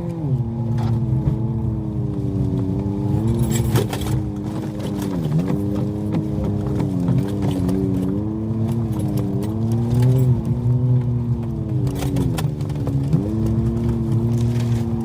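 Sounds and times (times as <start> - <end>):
tyres clicking and knocking on rough road: 0.0 - 15.0
vehicle engine revving under load: 0.0 - 15.0.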